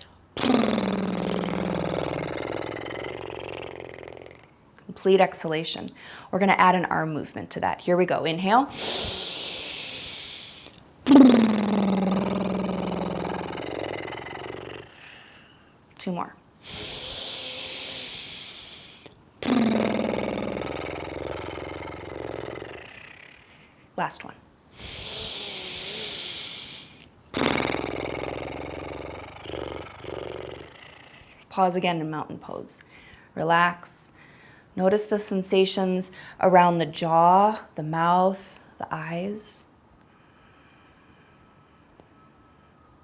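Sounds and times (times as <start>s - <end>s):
lips fluttering buzzing trill: 0.0s - 4.6s, 8.7s - 15.4s, 16.6s - 24.2s, 24.8s - 31.9s
woman inhaling through nose: 8.7s - 10.8s, 16.6s - 19.1s, 24.8s - 27.7s.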